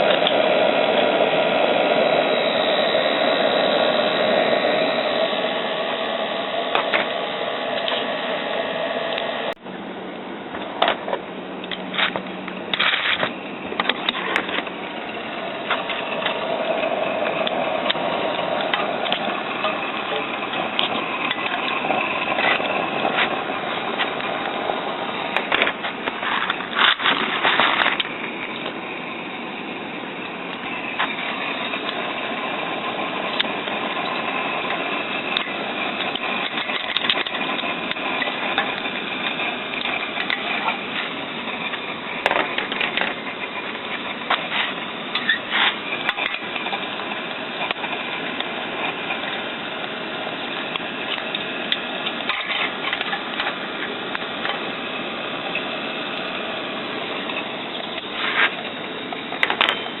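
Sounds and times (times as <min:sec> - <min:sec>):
model steam engine clattering: 0:10.7 - 1:00.0.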